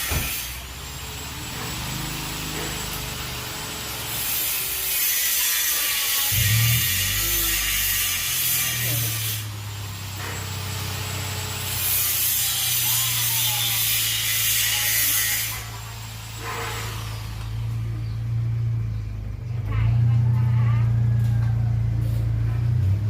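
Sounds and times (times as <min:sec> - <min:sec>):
rasping hiss: 0:03.5 - 0:18.0
steady low hum: 0:06.3 - 0:12.8.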